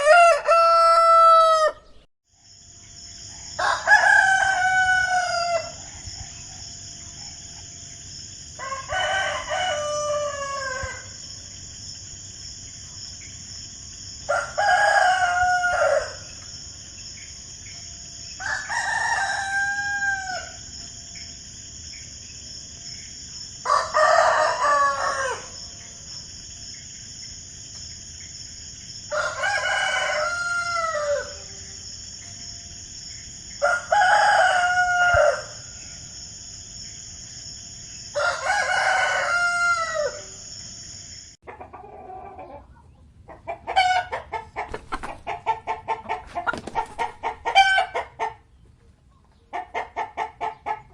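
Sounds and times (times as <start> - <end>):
roosters crowing: 0.0 - 2.0, 3.5 - 6.1, 8.5 - 11.4, 14.2 - 16.6, 18.2 - 20.8, 23.6 - 26.0, 29.0 - 31.8, 33.5 - 36.0, 37.9 - 40.5, 43.5 - 48.4.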